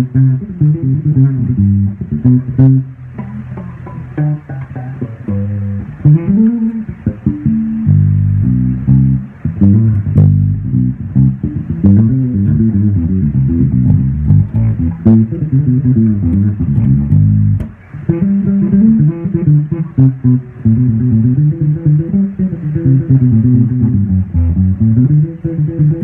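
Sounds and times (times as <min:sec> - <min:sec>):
bass guitar plucked low notes: 0:00.0 - 0:26.0.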